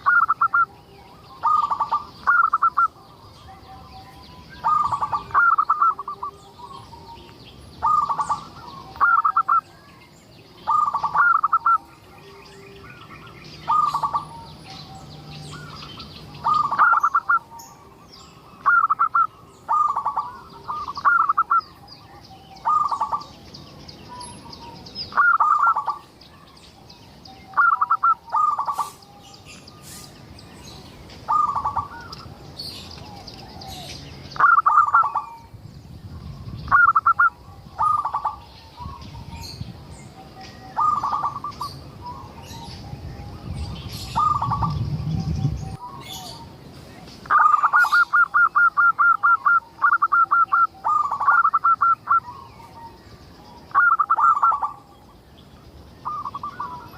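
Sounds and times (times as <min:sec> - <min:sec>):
dove cooing: 0:00.0 - 0:09.8, 0:10.6 - 0:13.0, 0:13.6 - 0:18.0, 0:18.6 - 0:23.4, 0:24.1 - 0:26.1, 0:27.5 - 0:29.2, 0:31.3 - 0:35.5, 0:36.6 - 0:39.4, 0:40.3 - 0:43.4, 0:44.1 - 0:46.6, 0:47.2 - 0:54.9.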